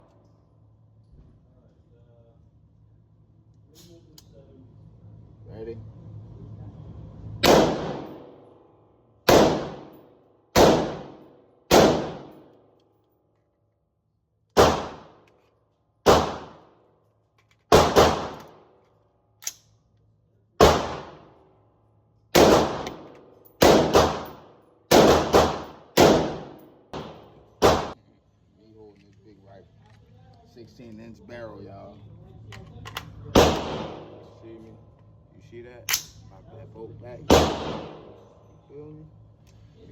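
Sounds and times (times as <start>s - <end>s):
rifle shots with short echo: 7.4s - 8.4s, 9.3s - 10.0s, 10.6s - 12.5s, 14.6s - 15.2s, 16.0s - 16.7s, 17.7s - 18.7s, 20.6s - 21.4s, 22.4s - 28.0s, 33.3s - 34.4s, 37.3s - 38.2s.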